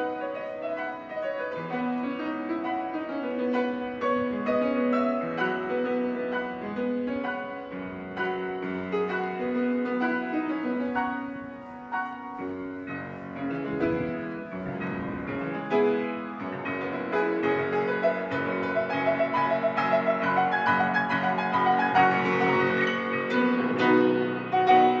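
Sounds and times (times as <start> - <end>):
solo piano piece: 0.0 - 25.0.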